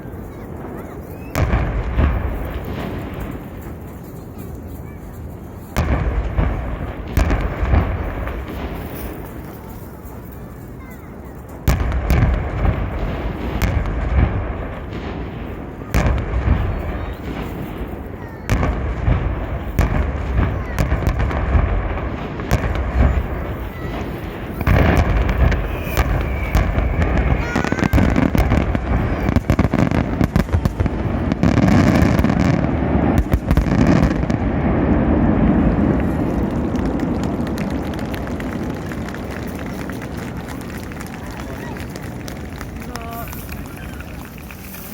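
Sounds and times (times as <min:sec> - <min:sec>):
fireworks bangs: 0:00.0 - 0:44.9.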